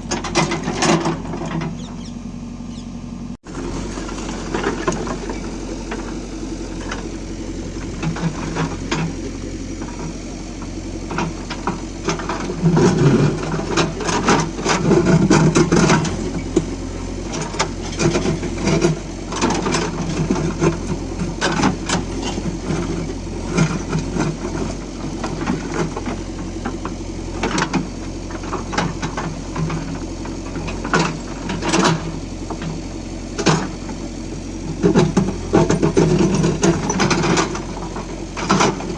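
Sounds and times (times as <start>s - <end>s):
diesel engine running: 0.0s - 38.9s
bucket clanks and rattles: 3.4s - 16.7s, 34.8s - 38.9s.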